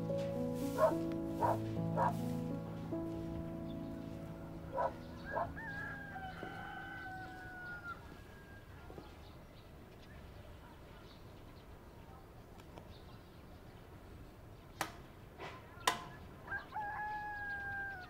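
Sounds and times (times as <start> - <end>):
soft music: 0.0 - 8.0
rooster crowing: 4.8 - 8.7, 16.5 - 18.0.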